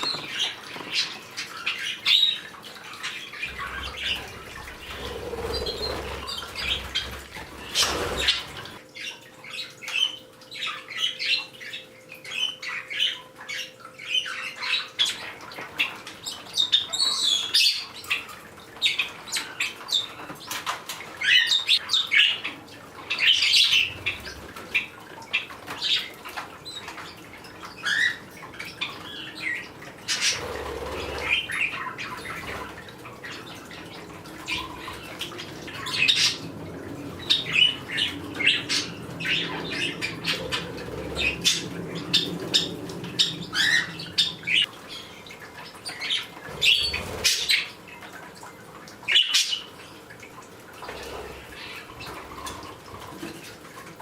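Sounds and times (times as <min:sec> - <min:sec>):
parrots chirping and squawking: 0:00.0 - 0:48.2
wings flapping: 0:03.4 - 0:08.8, 0:29.9 - 0:44.7.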